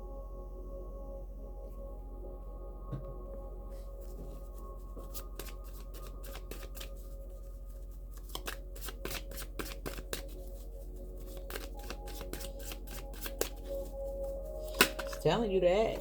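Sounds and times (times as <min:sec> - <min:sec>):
quiet ambient music: 0:00.0 - 0:16.0
cards being shuffled: 0:05.0 - 0:07.2, 0:07.8 - 0:15.3.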